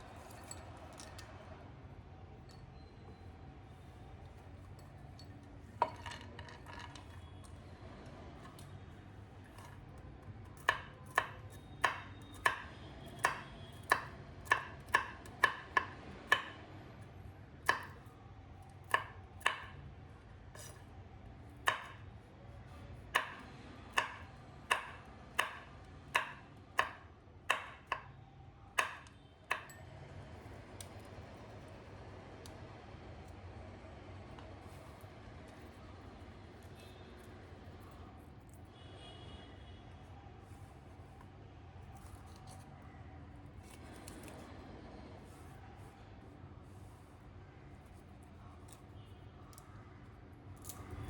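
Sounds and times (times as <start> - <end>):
knife chopping on cutting board: 10.7 - 16.6, 18.9 - 19.7, 21.6 - 22.0, 23.2 - 28.0, 28.8 - 29.8.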